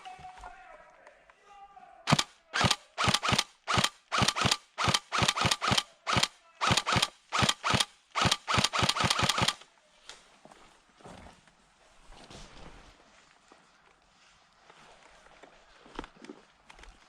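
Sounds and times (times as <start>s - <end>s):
airsoft gun shots: 2.1s - 9.6s.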